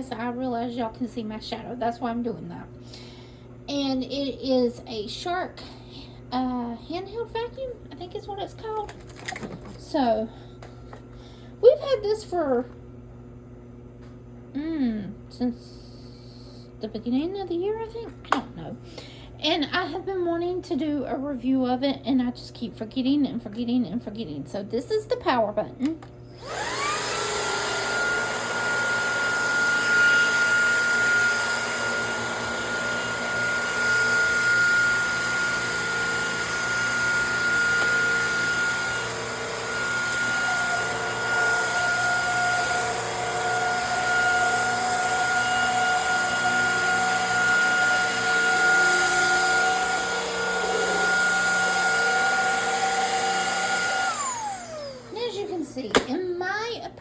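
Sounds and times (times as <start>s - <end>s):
handheld vacuum motor whine: 26.4s - 56.2s.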